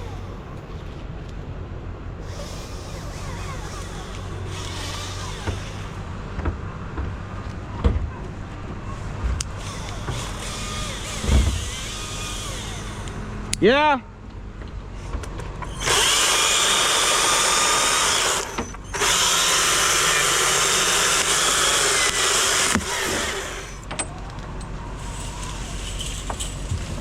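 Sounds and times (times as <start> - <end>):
knocks and clunks: 5.1 - 12.0.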